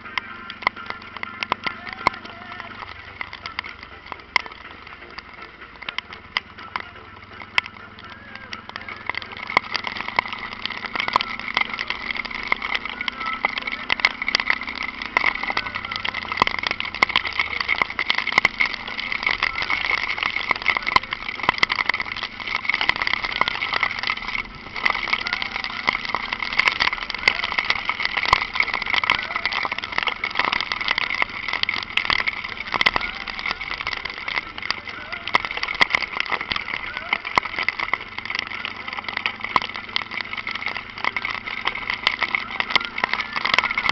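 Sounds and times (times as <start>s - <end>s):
motorcycle engine running: 0.0s - 43.9s
raindrops hitting microphone: 0.0s - 43.9s.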